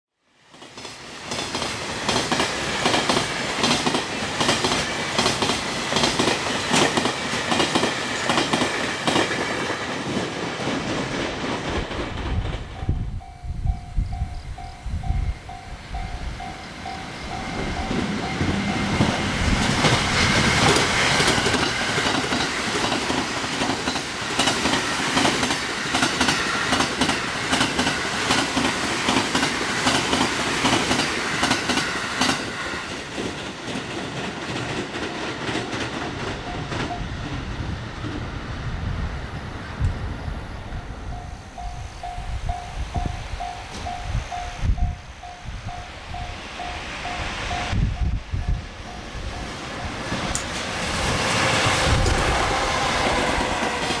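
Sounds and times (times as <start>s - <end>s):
train wheels clattering over rail joints: 0.6s - 14.2s, 15.4s - 37.5s, 41.1s - 54.0s
level crossing warning bell: 12.7s - 21.4s, 34.9s - 37.5s, 40.6s - 50.5s.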